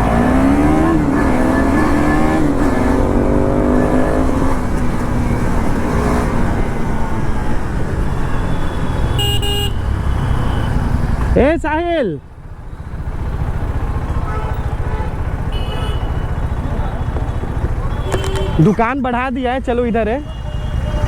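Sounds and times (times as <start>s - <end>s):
motorcycle engine accelerating: 0.0s - 9.2s, 12.4s - 19.0s
wind and road rush: 0.0s - 21.0s
horn beep: 7.4s - 11.0s, 14.2s - 18.9s.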